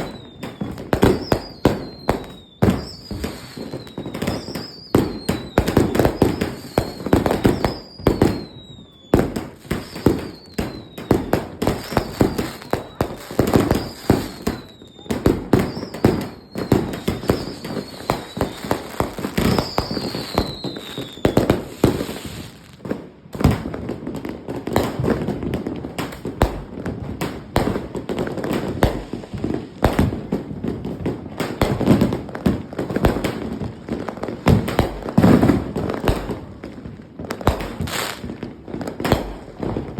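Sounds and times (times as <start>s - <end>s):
falling firework whistle: 0.0s - 22.8s
fireworks bangs: 0.0s - 39.9s.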